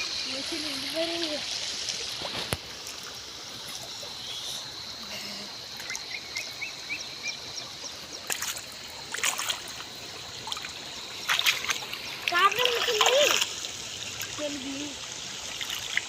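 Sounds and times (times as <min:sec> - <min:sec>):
water trickling: 0:00.0 - 0:16.0
sharp splashes: 0:08.2 - 0:16.0.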